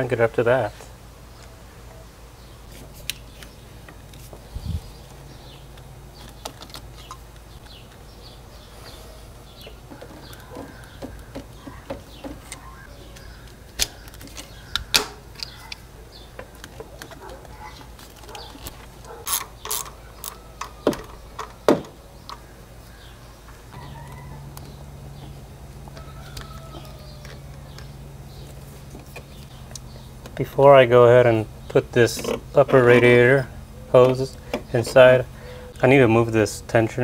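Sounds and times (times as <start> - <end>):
tools and engine parts clinking: 9.5 - 22.4.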